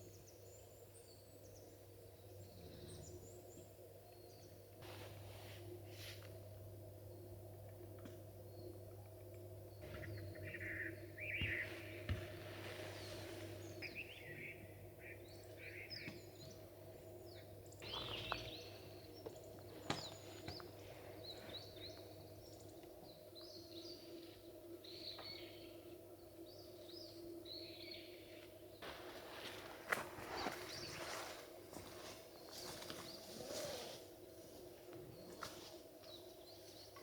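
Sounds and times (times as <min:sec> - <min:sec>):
steady low hum: 0:00.0 - 0:33.4
small birds chirping: 0:08.5 - 0:37.0.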